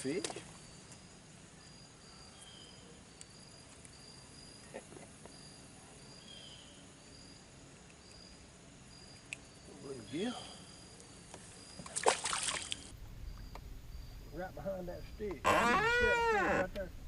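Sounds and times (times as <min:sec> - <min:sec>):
insect chirping: 0:00.0 - 0:17.0
lower slurred calls: 0:15.0 - 0:17.0.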